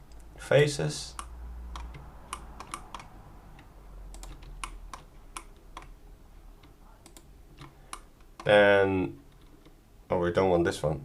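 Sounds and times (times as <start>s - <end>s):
mouse and keyboard clicks: 1.2s - 6.0s.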